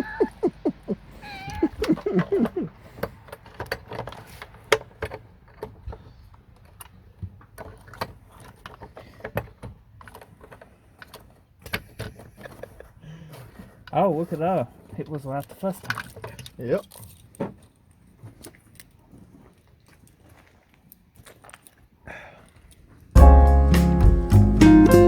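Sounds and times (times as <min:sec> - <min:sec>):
cat meowing: 0:01.2 - 0:02.7
plastic and metal parts rattling: 0:15.3 - 0:17.7.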